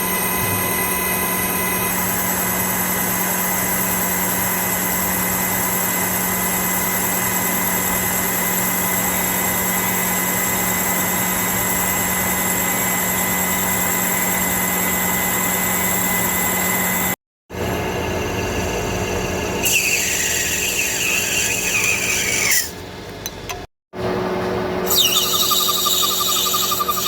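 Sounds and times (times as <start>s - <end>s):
high-pitched machining tones: 19.6s - 22.7s, 24.8s - 27.0s.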